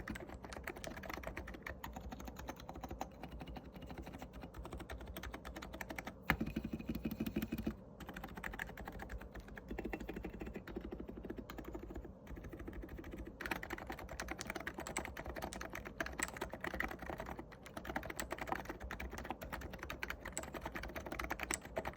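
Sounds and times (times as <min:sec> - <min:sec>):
keyboard keystrokes clacking: 0:00.0 - 0:21.9.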